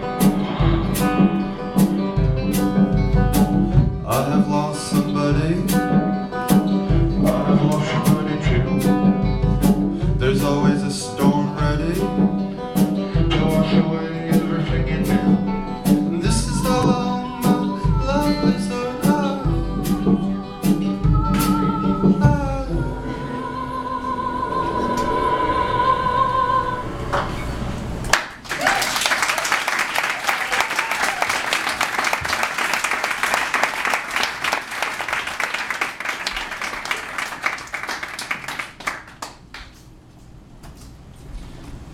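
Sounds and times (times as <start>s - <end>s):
drum beat: 0.0s - 10.8s, 11.6s - 22.9s
band playing: 0.0s - 23.9s, 29.3s - 39.0s
audience applauding: 28.1s - 39.8s.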